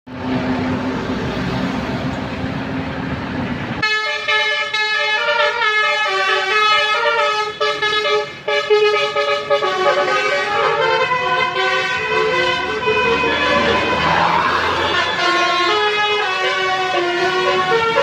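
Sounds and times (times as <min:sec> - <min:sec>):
bus engine and road noise: 0:00.0 - 0:18.0
multi-tone air horn melody: 0:03.8 - 0:18.0.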